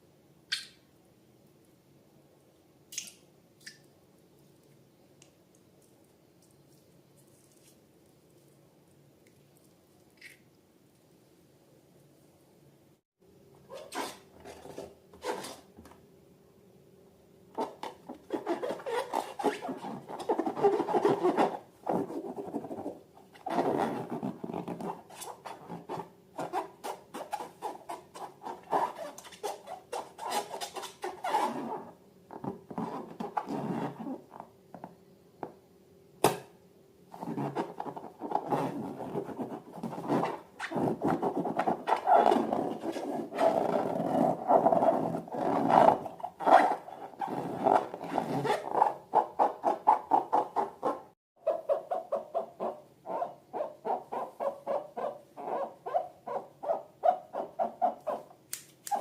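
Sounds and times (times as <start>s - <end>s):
sharp click: 58.5s - 59.0s.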